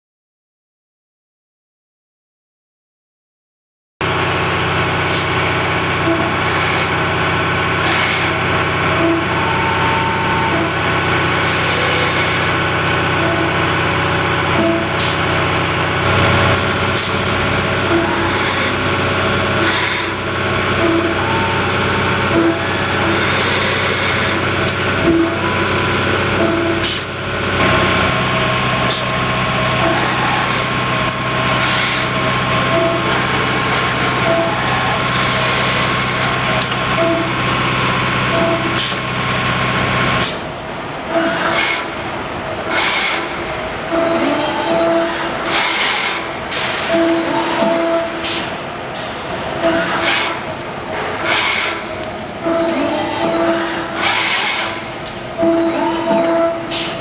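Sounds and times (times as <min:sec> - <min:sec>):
tube bending machine humming: 0:04.0 - 0:57.0
machine short tones: 0:04.4 - 0:40.5, 0:42.7 - 0:57.0
sharp machine clicks: 0:42.6 - 0:57.0.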